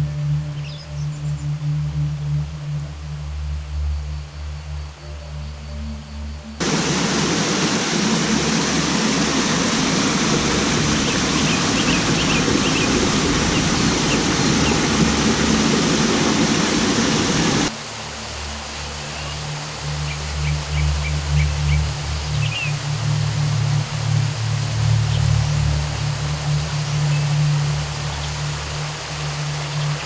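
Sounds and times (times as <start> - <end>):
background music with low tones: 0.0 - 30.0
waterfall rushing: 6.6 - 30.0.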